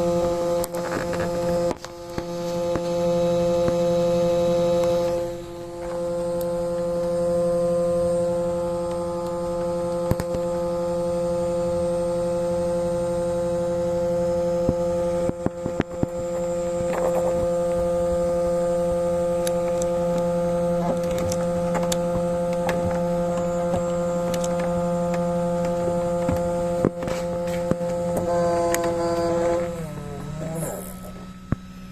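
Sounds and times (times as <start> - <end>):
car headlight buzzing hum: 0.0 - 31.9
clicks: 19.4 - 31.6.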